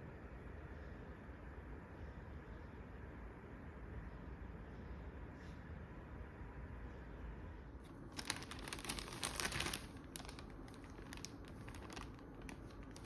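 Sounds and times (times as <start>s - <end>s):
steady low hum: 0.0s - 13.0s
wrapping crinkling: 7.8s - 13.0s.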